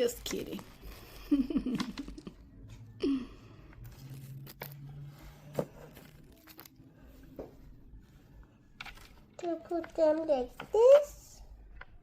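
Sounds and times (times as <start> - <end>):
child's voice: 9.4 - 11.4.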